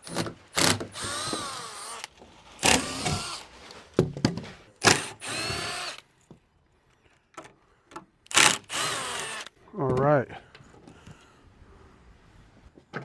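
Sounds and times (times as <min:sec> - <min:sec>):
cordless power drill bursts: 0:00.0 - 0:03.5, 0:04.8 - 0:06.0, 0:08.3 - 0:09.6.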